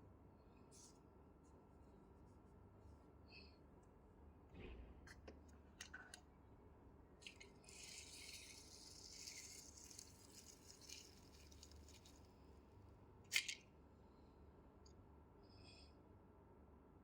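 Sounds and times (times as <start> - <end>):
soft rattling: 7.3 - 12.5.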